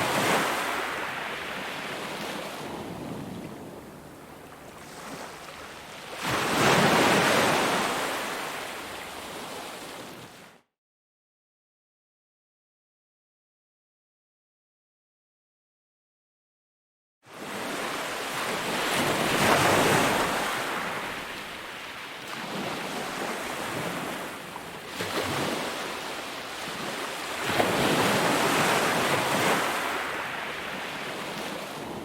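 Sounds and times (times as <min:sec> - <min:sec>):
ocean waves breaking: 0:00.0 - 0:10.5, 0:17.3 - 0:32.0.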